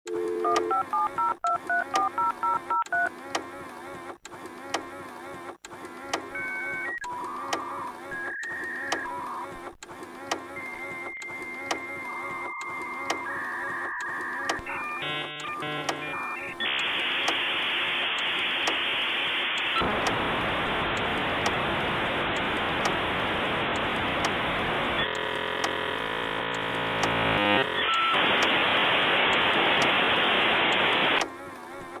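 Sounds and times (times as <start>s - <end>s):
dial-up modem handshake: 0.1s - 3.5s, 6.1s - 20.2s, 22.2s - 31.3s
buzzing many-toned training: 14.8s - 16.2s, 25.0s - 28.0s
steady hiss: 16.6s - 25.0s, 28.1s - 31.2s.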